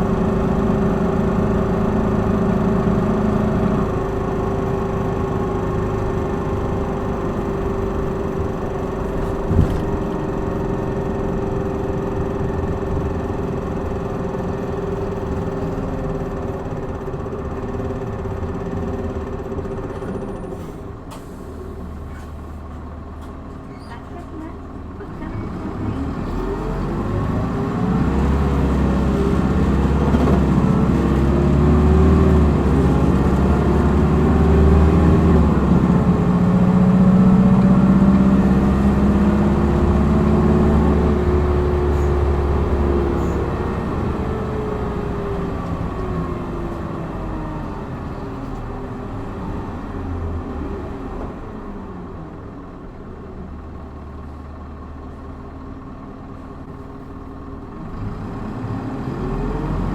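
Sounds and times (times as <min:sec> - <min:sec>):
bus diesel engine accelerating: 0:00.0 - 0:59.9.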